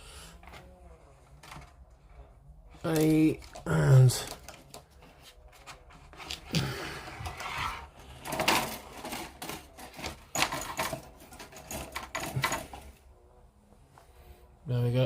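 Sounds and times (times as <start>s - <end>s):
plastic parts rustling and clattering: 0.4s - 13.1s.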